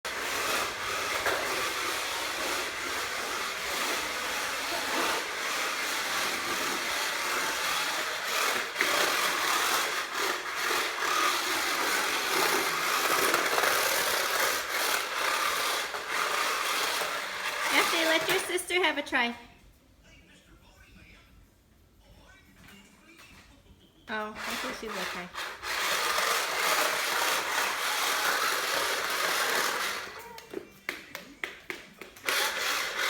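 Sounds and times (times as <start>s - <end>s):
toy car electric motor whirring: 0.1s - 18.6s, 24.2s - 30.6s, 32.1s - 33.0s.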